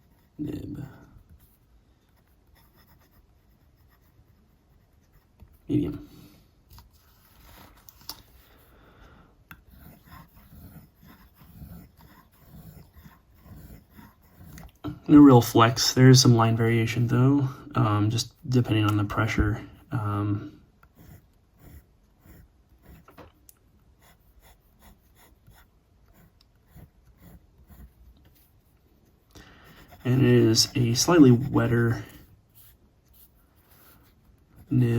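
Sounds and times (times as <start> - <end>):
fountain pen scratching paper: 0.0 - 0.4, 1.2 - 5.7, 6.7 - 8.6, 9.5 - 14.8, 20.8 - 23.2, 23.9 - 28.8, 29.6 - 34.9.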